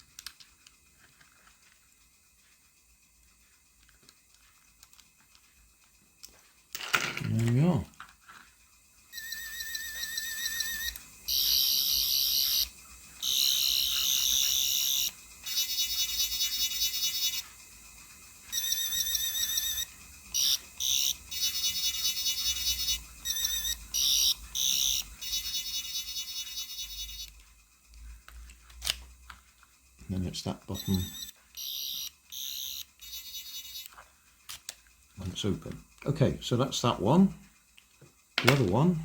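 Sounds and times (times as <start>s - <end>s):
toy warbling electronic sound effect: 9.1s - 17.6s, 18.5s - 27.3s, 30.7s - 34.0s.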